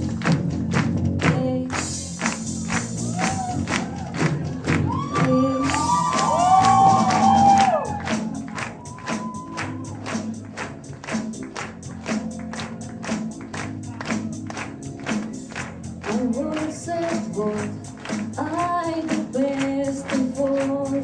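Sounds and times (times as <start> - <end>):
bass line: 0.0 - 21.0
person singing: 1.2 - 2.2, 3.1 - 10.4, 16.0 - 21.0.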